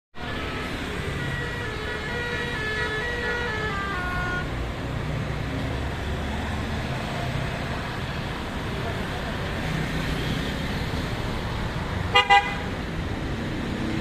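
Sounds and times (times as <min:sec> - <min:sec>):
multi-tone bus horn melody: 0:00.2 - 0:04.6, 0:12.1 - 0:12.7
road traffic rumble: 0:00.2 - 0:14.0.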